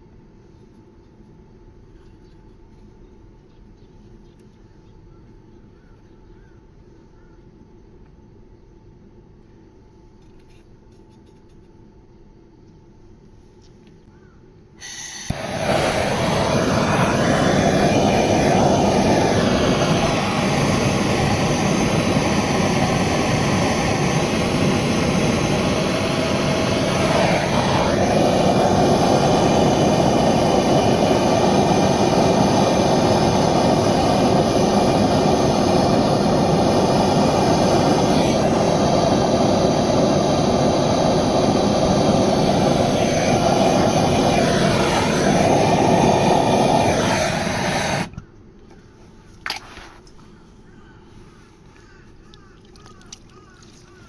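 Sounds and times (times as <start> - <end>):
gas torch burning: 14.8 - 48.2.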